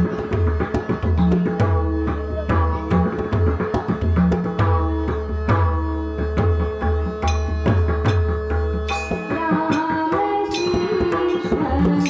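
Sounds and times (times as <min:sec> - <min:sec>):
tabla strokes: 0:00.0 - 0:12.0
sustained harmonium notes: 0:04.8 - 0:12.0.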